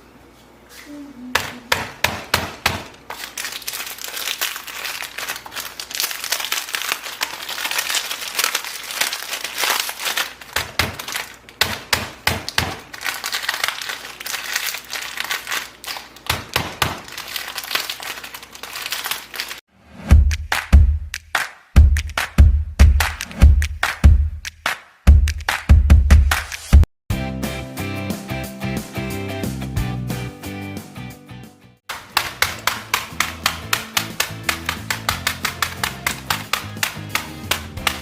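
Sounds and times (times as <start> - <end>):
dry snacks being crushed: 3.0 - 11.7, 12.5 - 19.6, 31.9 - 38.0.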